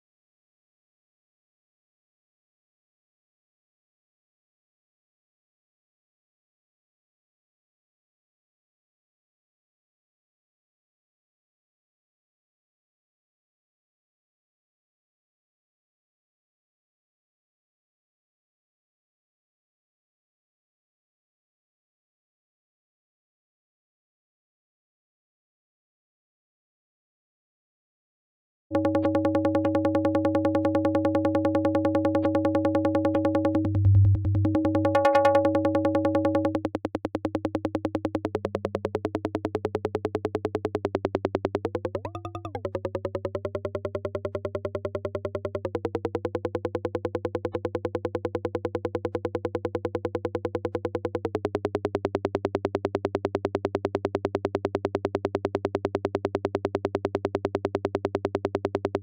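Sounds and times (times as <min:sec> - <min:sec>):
low synth bass tone: 0:28.7 - 0:55.1
rapidly pulsing synth tones: 0:28.7 - 0:56.2.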